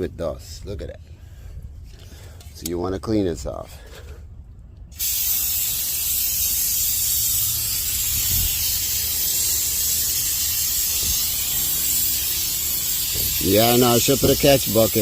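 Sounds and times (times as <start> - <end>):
aerosol spray hissing: 5.0 - 15.0.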